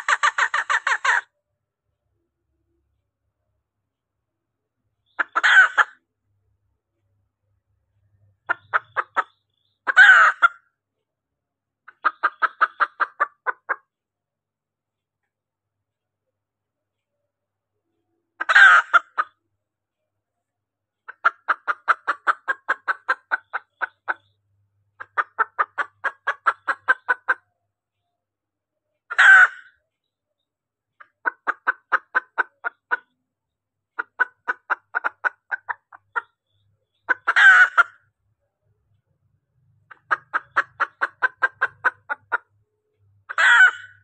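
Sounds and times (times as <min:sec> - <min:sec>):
harsh hen calls: 0:00.0 - 0:01.3, 0:05.2 - 0:06.0, 0:08.4 - 0:10.7, 0:18.4 - 0:19.4, 0:29.1 - 0:29.8, 0:37.1 - 0:38.0, 0:43.3 - 0:44.0
hen clucking rapidly: 0:00.0 - 0:01.3, 0:05.1 - 0:06.0, 0:08.4 - 0:10.7, 0:11.9 - 0:13.9, 0:18.4 - 0:19.4, 0:21.1 - 0:24.4, 0:25.0 - 0:27.5, 0:29.1 - 0:29.8, 0:31.0 - 0:33.2, 0:34.0 - 0:38.1, 0:39.9 - 0:42.6, 0:43.3 - 0:44.0.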